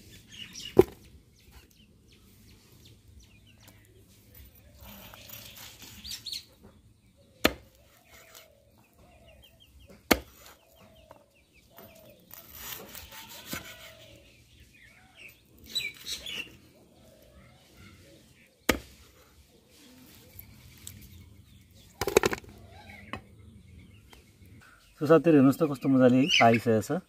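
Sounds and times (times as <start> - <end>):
knife chopping ribs on a board: 10.0 - 10.5.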